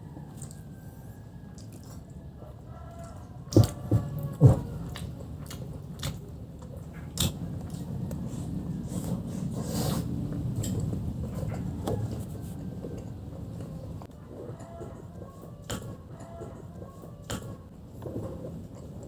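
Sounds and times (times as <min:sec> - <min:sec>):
chewing fried chicken: 0:00.0 - 0:19.0.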